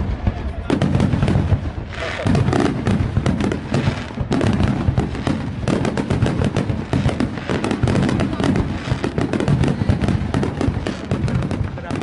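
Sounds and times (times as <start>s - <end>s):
fireworks crackling: 0.0s - 12.0s.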